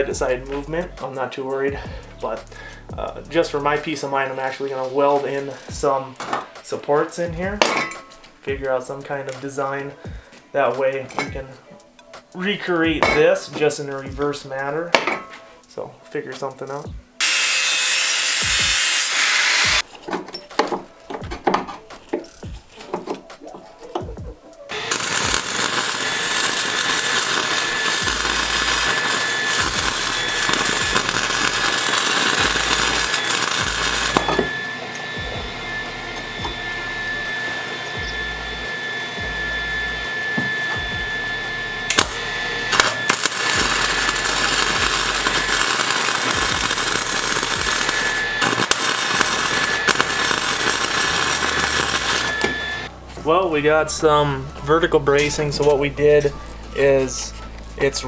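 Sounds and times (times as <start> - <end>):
power tool whining on steel: 17.2 - 19.8, 24.7 - 52.9.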